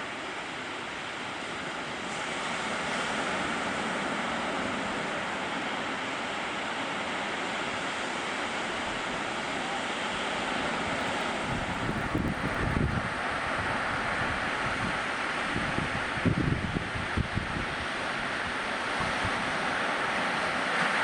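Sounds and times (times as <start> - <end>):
ocean surf washing on beach: 0.0 - 21.0
wind buffeting microphone: 10.8 - 14.9, 15.5 - 17.8.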